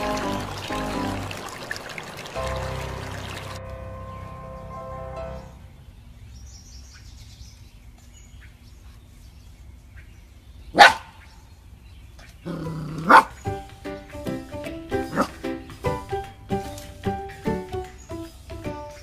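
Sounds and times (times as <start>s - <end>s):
dog barking: 10.8s - 11.2s, 12.9s - 13.4s
music with short rhythmic notes: 13.4s - 19.0s.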